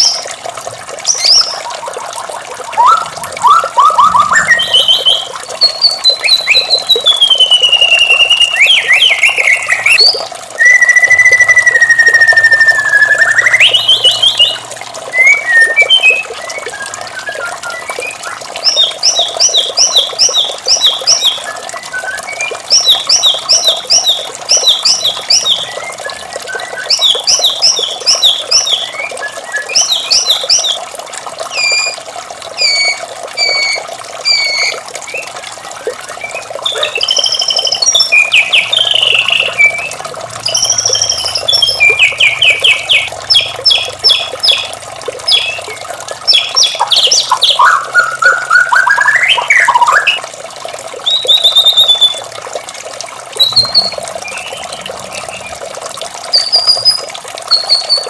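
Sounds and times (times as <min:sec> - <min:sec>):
running water: 0:00.0 - 0:58.0
bird singing whistled notes: 0:02.7 - 0:19.6, 0:32.6 - 0:35.3, 0:36.2 - 0:43.1, 0:45.3 - 0:50.2, 0:51.0 - 0:52.2, 0:53.4 - 0:55.5, 0:56.3 - 0:58.0.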